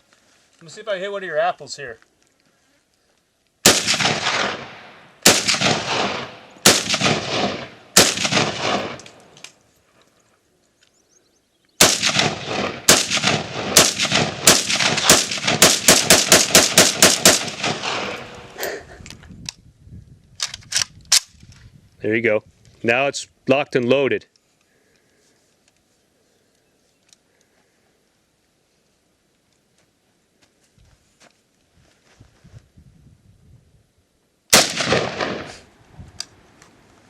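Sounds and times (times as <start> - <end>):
rifle shots with echo: 3.6 - 9.4, 11.8 - 18.6, 34.5 - 35.7.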